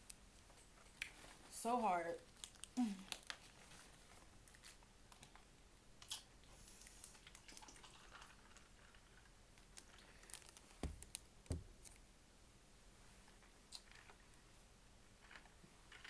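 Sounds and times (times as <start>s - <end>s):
dull thumps: 10.8s - 11.8s.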